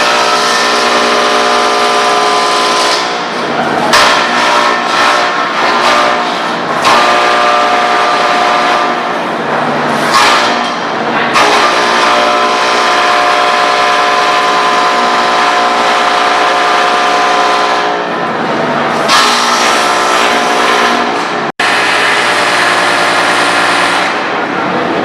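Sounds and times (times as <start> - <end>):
wood chipper motor humming: 21.6 - 24.3.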